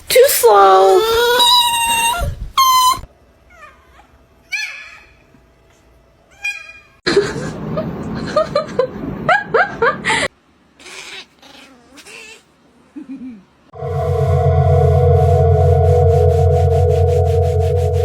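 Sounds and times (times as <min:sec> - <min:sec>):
loud noise: 0:13.8 - 0:18.0
steady music: 0:13.8 - 0:18.0.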